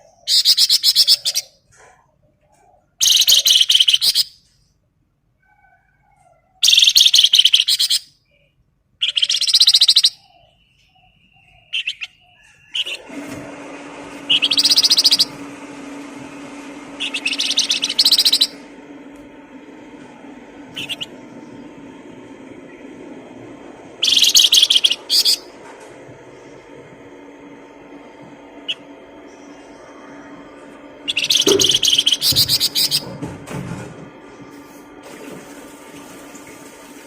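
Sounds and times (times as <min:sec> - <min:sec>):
songbird trilling: 0:03.0 - 0:04.4, 0:06.6 - 0:08.1, 0:09.0 - 0:13.0, 0:14.3 - 0:15.3, 0:17.0 - 0:18.6, 0:20.8 - 0:21.1, 0:24.0 - 0:25.5, 0:31.0 - 0:33.0.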